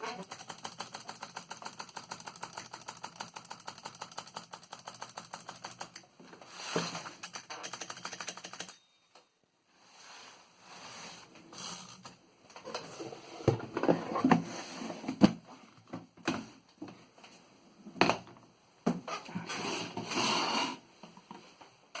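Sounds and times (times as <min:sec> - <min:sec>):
typewriter clacks: 0:00.0 - 0:06.0, 0:07.2 - 0:08.8
typewriter clicks: 0:00.2 - 0:06.0, 0:07.2 - 0:08.8.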